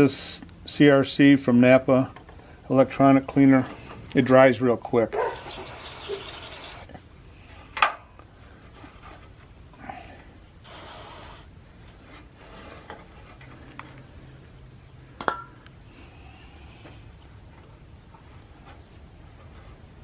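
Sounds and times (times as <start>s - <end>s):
aerosol can hiss: 5.4s - 6.9s, 10.6s - 11.5s.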